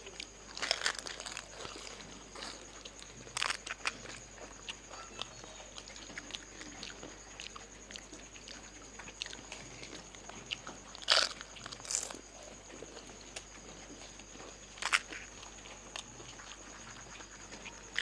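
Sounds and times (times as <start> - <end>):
crisp shells crunching: 0.5 - 4.1, 11.0 - 12.2.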